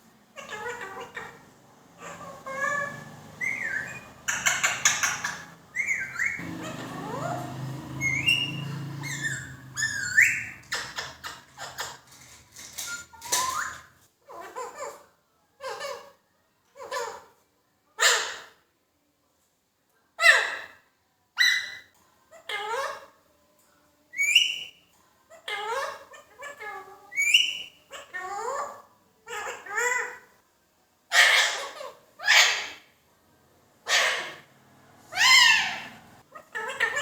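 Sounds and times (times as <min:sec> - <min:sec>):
parrot chattering calls: 0:00.4 - 0:15.0, 0:31.1 - 0:32.9, 0:33.8 - 0:37.0
parrot whistling: 0:02.0 - 0:12.0, 0:12.7 - 0:13.9, 0:35.1 - 0:37.0.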